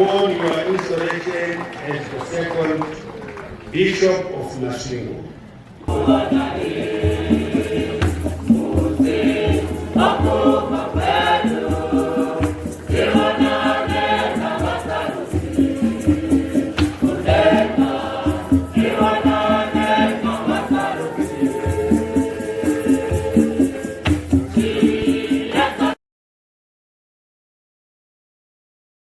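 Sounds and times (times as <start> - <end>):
choir singing: 5.8 - 26.0
shaken rattles: 5.9 - 26.0
steady beat: 5.9 - 26.0.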